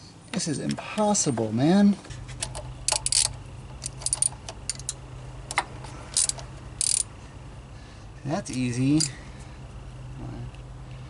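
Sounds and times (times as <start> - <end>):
steady low hum: 0.0 - 11.0
wrench clicking on metal fittings: 2.4 - 5.0, 6.2 - 7.1.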